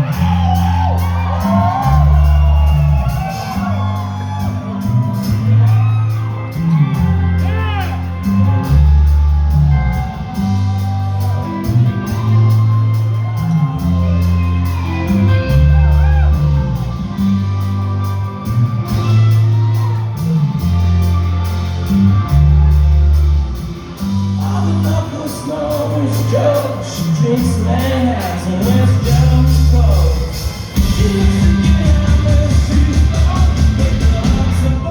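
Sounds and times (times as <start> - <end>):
crowd shouting: 0.0 - 17.2
live rock band playing: 0.0 - 34.9.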